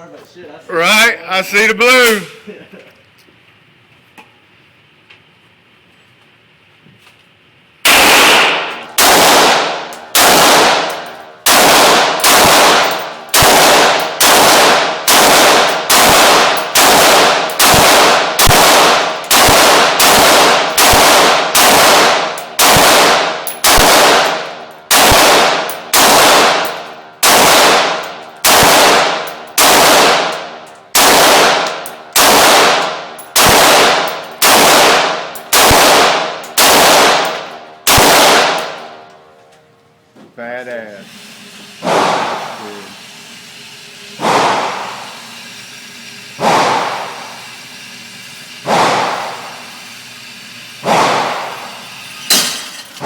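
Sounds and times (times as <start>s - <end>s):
rifle shots echoing: 7.8s - 39.1s, 41.8s - 42.6s, 44.2s - 45.2s, 46.4s - 47.4s, 48.7s - 49.6s, 50.8s - 51.8s.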